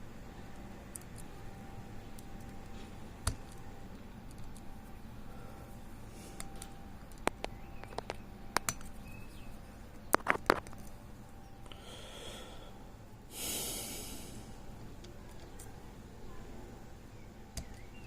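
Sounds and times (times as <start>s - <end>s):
soft breaths: 5.1s - 6.9s, 11.6s - 14.8s.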